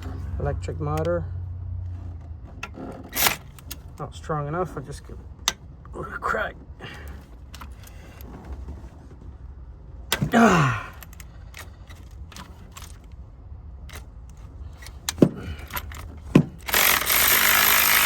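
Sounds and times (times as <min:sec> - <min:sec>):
electric ratchet motor running: 0:16.6 - 0:18.0.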